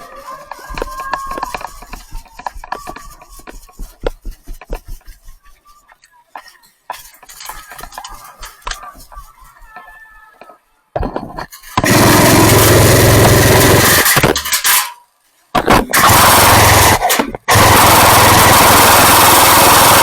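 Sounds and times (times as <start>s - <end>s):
faint voices: 0.0s - 11.0s.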